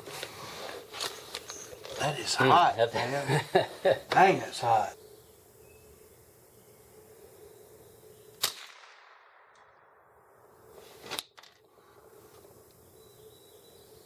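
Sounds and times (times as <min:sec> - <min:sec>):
rifle cracks: 0:08.4 - 0:09.8.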